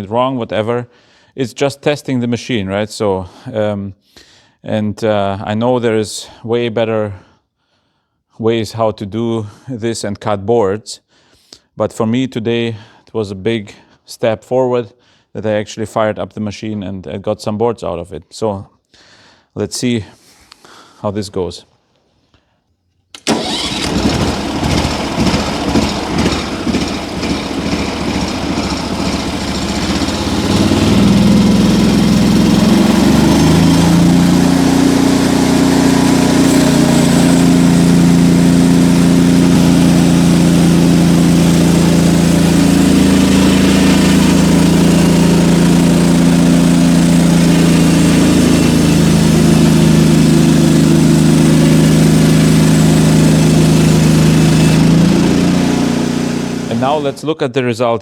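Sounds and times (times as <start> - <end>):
small gasoline engine running: 23.2 - 57.2
band blade cutting log: 56.7 - 57.2.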